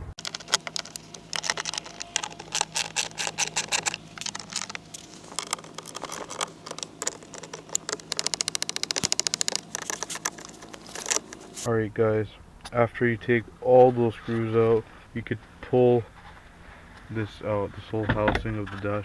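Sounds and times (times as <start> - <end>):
ratchet clicking: 0.2 - 11.3
tool scraping: 0.2 - 11.7.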